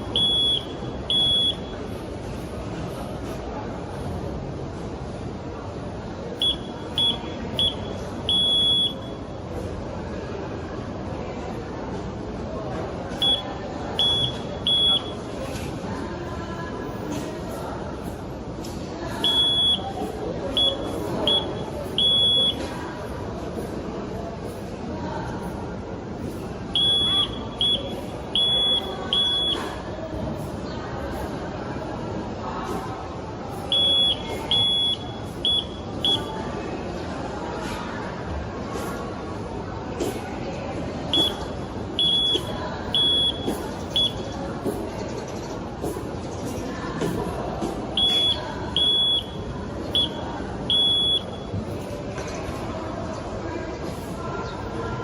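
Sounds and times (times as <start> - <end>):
steady background noise: 0.0 - 55.0
high-pitched morse code beeps: 0.1 - 1.8, 6.4 - 9.2, 13.2 - 13.4, 14.0 - 15.2, 19.3 - 20.0, 20.6 - 22.7, 26.8 - 29.7, 33.7 - 36.3, 41.2 - 44.3, 48.0 - 51.5.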